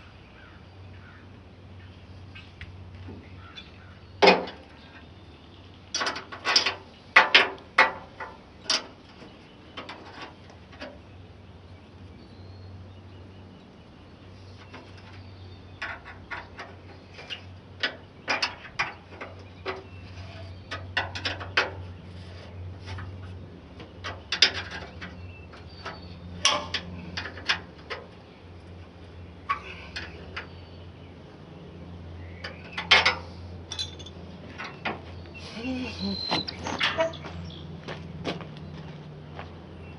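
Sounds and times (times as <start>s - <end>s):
hand tools clanking on metal: 5.9s - 11.0s, 14.6s - 28.1s, 29.4s - 30.6s, 32.3s - 37.6s.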